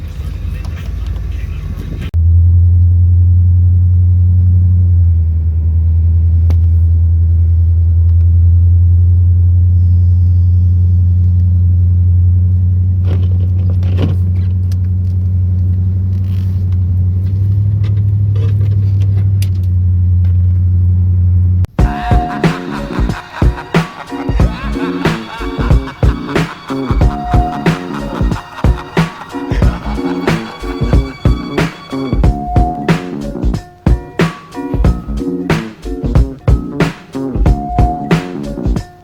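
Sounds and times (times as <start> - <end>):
vehicle engine droning: 0.0 - 33.9.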